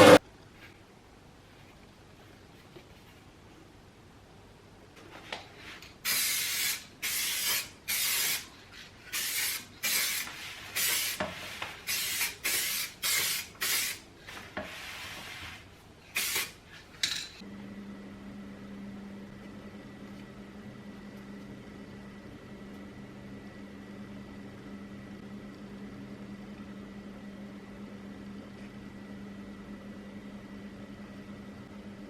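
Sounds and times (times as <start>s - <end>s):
table fan motor humming: 0.0s - 0.2s
short hissing bursts: 6.0s - 8.5s, 9.1s - 11.2s, 11.8s - 14.0s, 14.8s - 16.6s.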